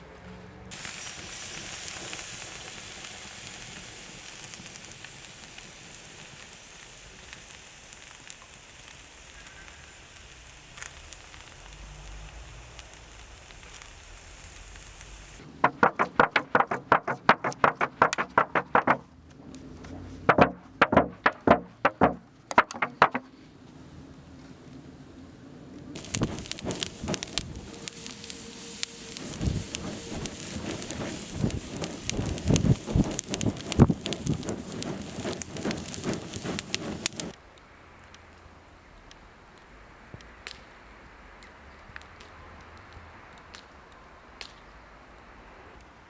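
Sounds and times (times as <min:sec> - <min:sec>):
wood fire hissing and crackling: 0:00.2 - 0:37.4
sharp rapid clicks and knocks: 0:15.4 - 0:23.4, 0:26.0 - 0:37.3.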